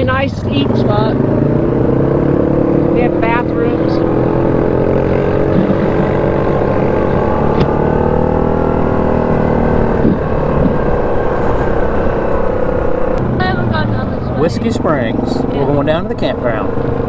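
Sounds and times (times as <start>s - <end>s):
atv engine running: 0.0s - 17.0s.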